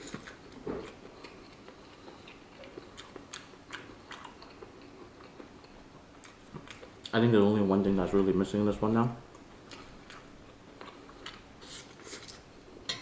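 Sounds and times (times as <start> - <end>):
person chewing food: 0.0 - 7.1, 9.3 - 12.5.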